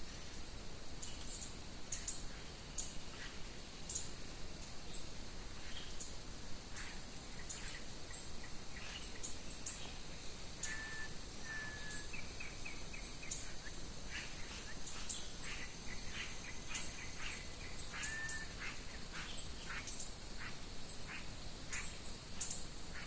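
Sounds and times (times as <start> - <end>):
birds chirping: 4.9 - 23.0
birds whistling: 10.6 - 20.5
short repeated bird calls: 10.6 - 23.0.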